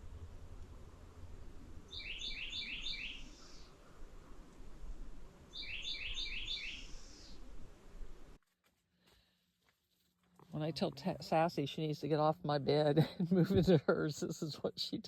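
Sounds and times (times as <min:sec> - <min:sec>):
low background rumble: 0:00.0 - 0:02.0
bird calling down-slurred notes: 0:01.9 - 0:04.1, 0:05.5 - 0:07.5.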